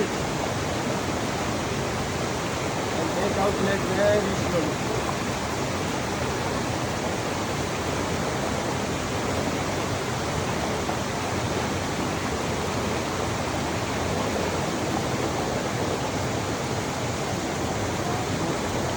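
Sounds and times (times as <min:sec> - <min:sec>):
flowing water rushing: 0:00.0 - 0:18.9.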